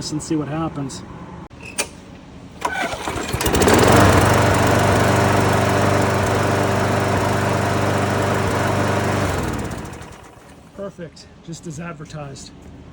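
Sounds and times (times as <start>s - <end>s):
lawn mower engine starting and running: 2.6s - 10.8s.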